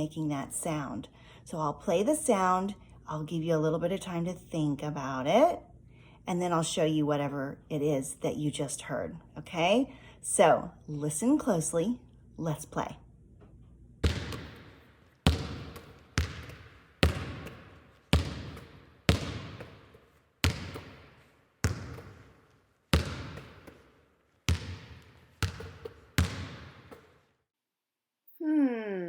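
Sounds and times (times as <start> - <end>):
ball bouncing: 14.0 - 27.2.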